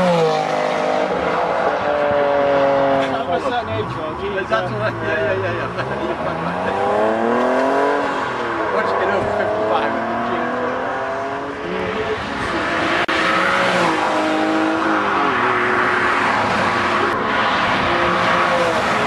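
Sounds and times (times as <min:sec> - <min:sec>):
car engine revving through gears: 0:00.0 - 0:03.3, 0:04.5 - 0:19.0.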